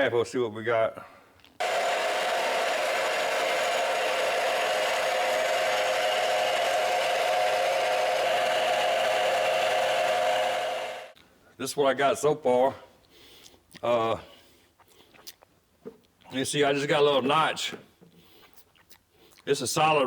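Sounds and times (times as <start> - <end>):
power tool cutting steel: 1.6 - 11.2.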